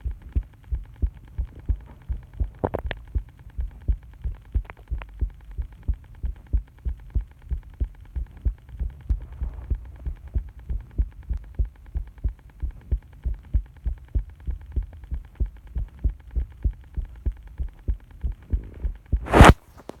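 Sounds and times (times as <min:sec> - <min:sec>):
heartbeat thumps: 0:00.0 - 0:19.6.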